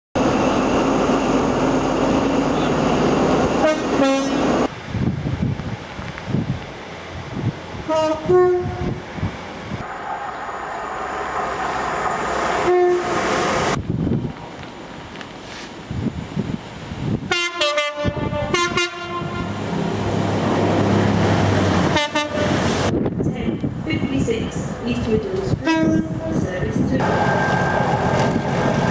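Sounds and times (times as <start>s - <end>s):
train rumbling: 0.2s - 28.9s
two-tone train horn: 3.6s - 4.6s, 7.9s - 9.0s, 12.5s - 13.5s, 17.3s - 19.6s, 21.9s - 22.6s, 25.6s - 26.2s.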